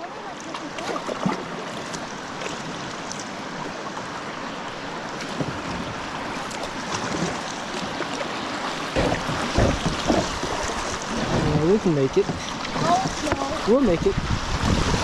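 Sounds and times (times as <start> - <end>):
river water rushing: 0.0 - 15.0.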